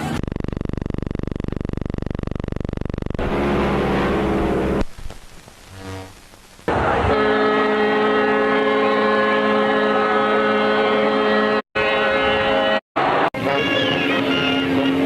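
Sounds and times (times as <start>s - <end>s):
ship's horn blast: 7.1s - 15.0s.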